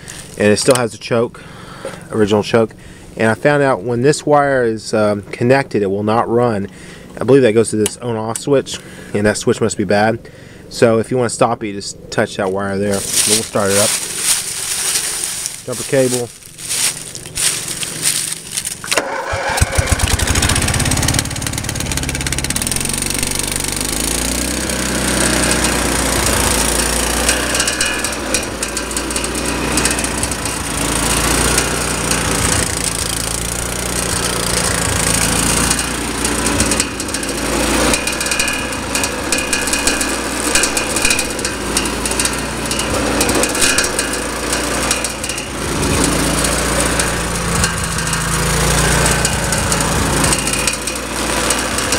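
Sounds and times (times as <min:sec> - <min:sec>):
electric starter cranking: 0:00.0 - 0:02.2, 0:12.8 - 0:51.9
gas engine running: 0:00.0 - 0:03.6, 0:12.8 - 0:51.9.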